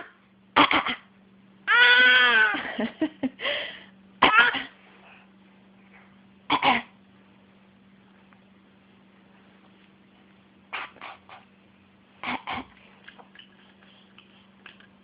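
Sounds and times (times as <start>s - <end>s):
short coughs: 6.5s - 6.9s.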